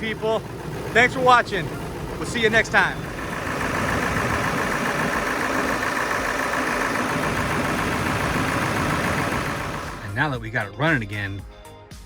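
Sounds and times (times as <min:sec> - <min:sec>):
diesel engine idling: 0:00.0 - 0:10.2.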